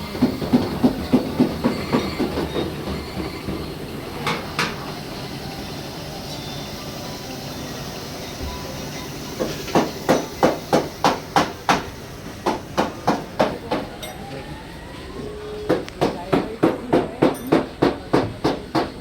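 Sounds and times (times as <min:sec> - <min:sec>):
hammer striking metal: 0:09.4 - 0:14.3, 0:15.7 - 0:18.9.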